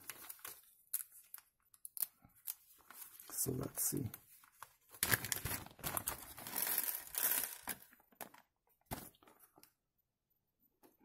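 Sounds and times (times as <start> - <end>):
plastic bag rustling: 4.2 - 9.3.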